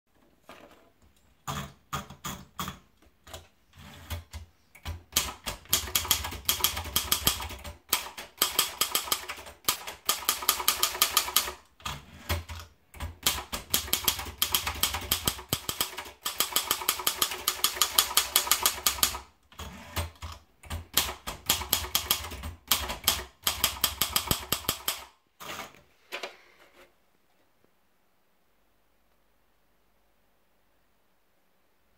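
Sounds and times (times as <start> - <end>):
typewriter keystrokes: 4.0 - 25.7.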